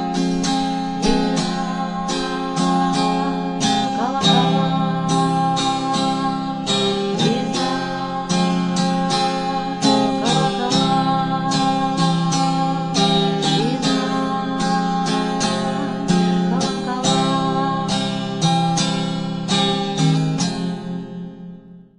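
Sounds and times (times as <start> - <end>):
acoustic guitar strumming: 0.0 - 21.9.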